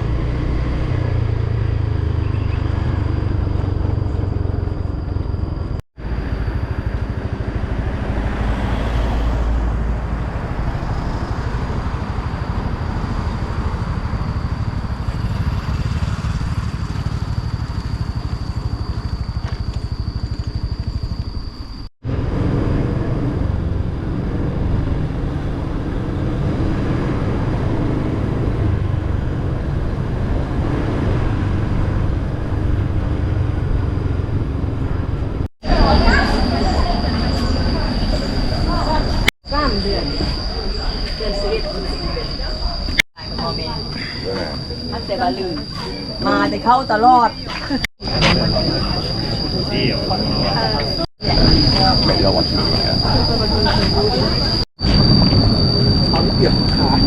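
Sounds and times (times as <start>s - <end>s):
motor scooter engine rumble: 0.0s - 57.0s
wind rushing over microphone: 20.1s - 39.3s, 48.0s - 57.0s.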